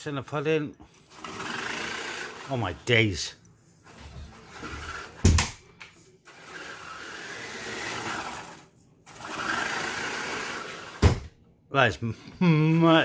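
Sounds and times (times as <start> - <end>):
electric motor and gearbox whirring: 1.0 - 3.0, 3.8 - 5.5, 6.3 - 11.3.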